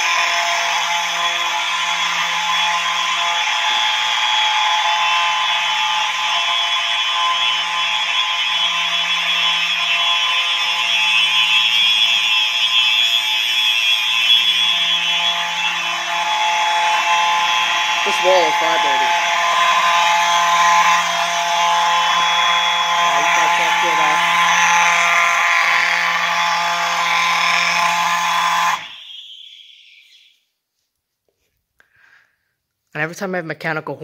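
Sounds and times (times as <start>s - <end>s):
fire alarm horns buzzing: 0.0s - 30.3s
lower buzz: 0.0s - 30.3s.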